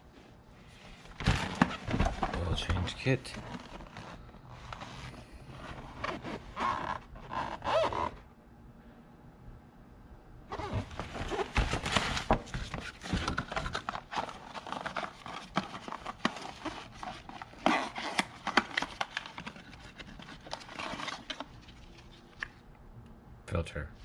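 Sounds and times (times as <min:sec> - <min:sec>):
packaging rustling and clicking: 0:01.0 - 0:07.1, 0:10.5 - 0:22.6.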